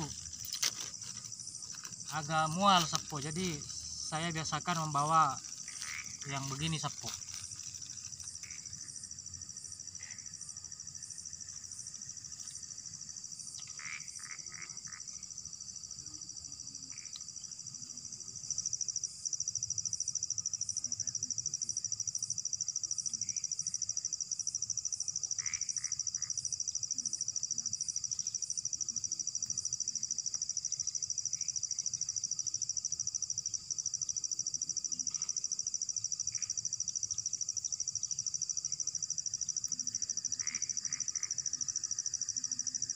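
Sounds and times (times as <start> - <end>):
faint rustles and clicks: 0.0 - 4.0, 5.4 - 8.4
insects trilling: 0.0 - 42.9
regular insect chirp: 0.0 - 42.9.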